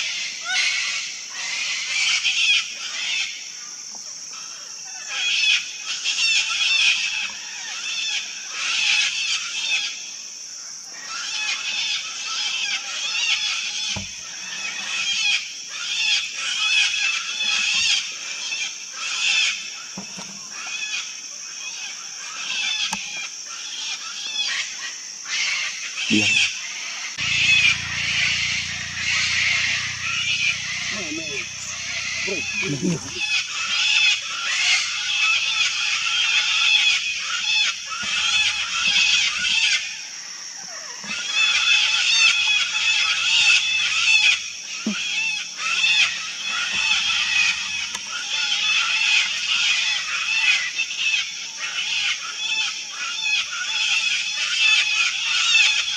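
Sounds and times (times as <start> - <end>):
cockatoos screeching: 25.3 - 40.1, 40.7 - 55.9
high-pitched drone: 27.2 - 33.6.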